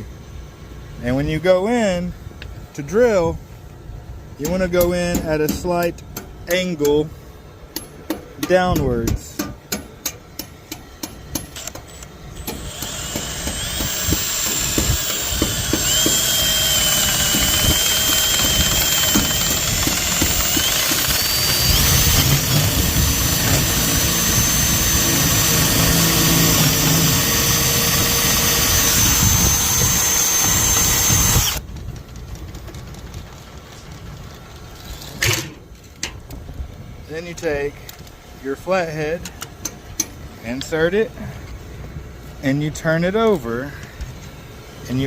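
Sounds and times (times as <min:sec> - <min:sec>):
power drill boring into metal: 0:11.6 - 0:31.6.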